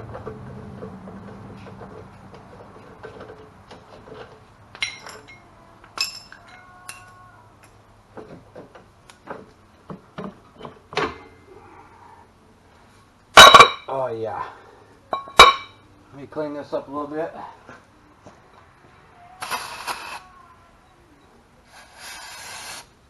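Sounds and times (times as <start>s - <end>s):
metal tools clinking and knocking: 2.8s - 7.8s, 15.1s - 15.8s.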